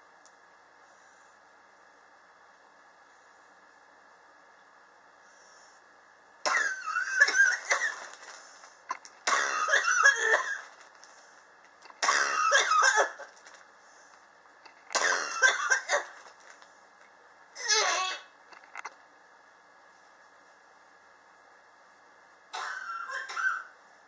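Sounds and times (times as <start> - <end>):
person coughing: 6.5 - 8.2, 9.3 - 10.7, 12.0 - 13.4, 14.9 - 16.2, 22.6 - 23.7.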